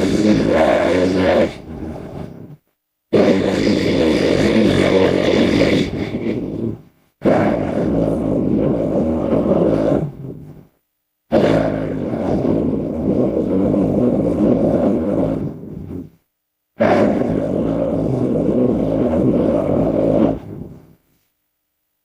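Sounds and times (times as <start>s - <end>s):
deep monster roars: 3.1s - 10.3s, 11.3s - 15.9s, 16.8s - 20.8s.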